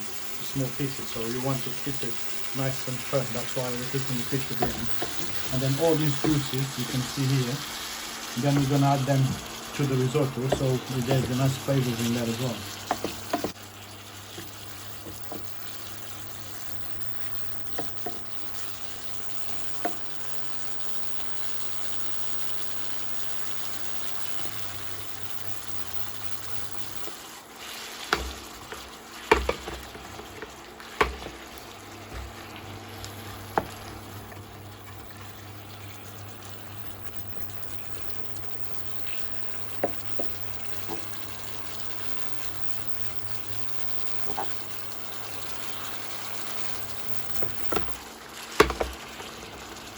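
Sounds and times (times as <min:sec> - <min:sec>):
seafood sizzling in a frying pan: 0:00.0 - 0:49.9
utensil knocking against pan: 0:12.9 - 0:13.6, 0:29.3 - 0:31.4, 0:48.6 - 0:49.0.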